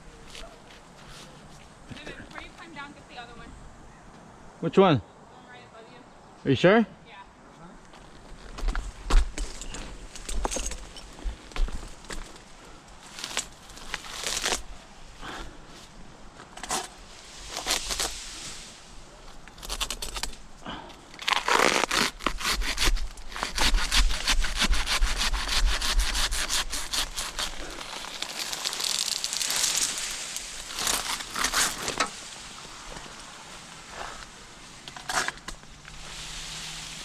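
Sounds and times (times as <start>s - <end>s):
dry frond crackling and rustling: 7.7s - 23.7s, 25.9s - 37.0s
hand saw rasping through frond: 21.2s - 29.8s, 30.8s - 32.1s.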